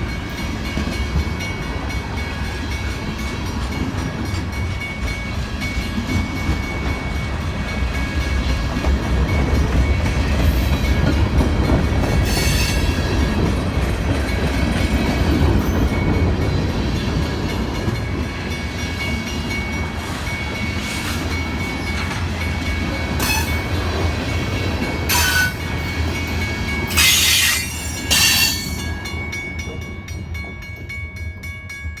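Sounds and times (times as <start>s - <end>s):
train wheels rumbling on rails: 0.0s - 32.0s
sharp metallic sounds: 26.9s - 29.0s.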